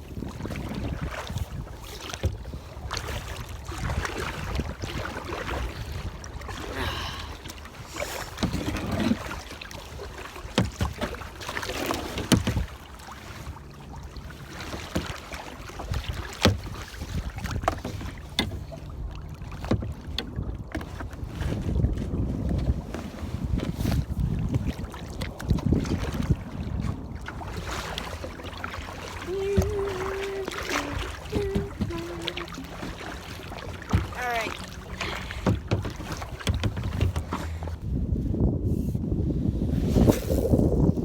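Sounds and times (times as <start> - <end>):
wind buffeting microphone: 0.0 - 10.8, 15.7 - 41.0.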